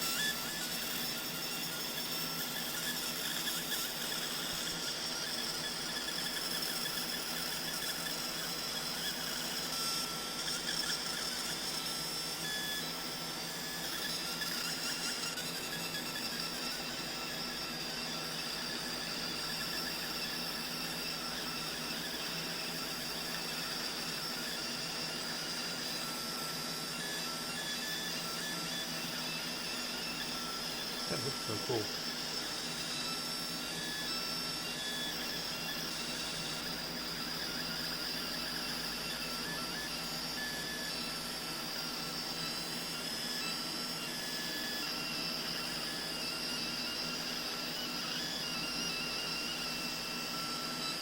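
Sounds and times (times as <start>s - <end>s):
laser engraving machine whine: 0.0s - 51.0s.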